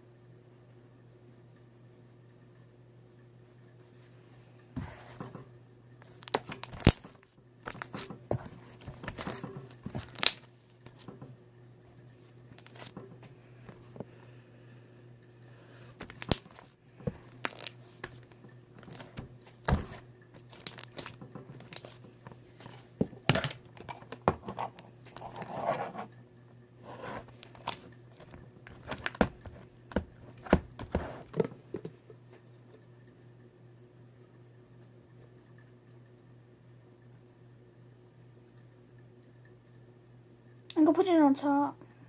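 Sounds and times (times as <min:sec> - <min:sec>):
slime crinkling and clicking: 0:06.0 - 0:11.1, 0:12.5 - 0:13.0, 0:16.0 - 0:22.0, 0:27.3 - 0:31.0.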